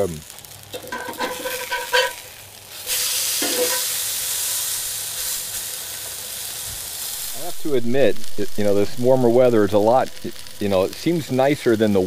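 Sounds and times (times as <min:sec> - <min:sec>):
food sizzling in hot oil: 0:00.0 - 0:12.0
metal utensil scraping a skillet: 0:00.8 - 0:02.2, 0:03.4 - 0:03.9.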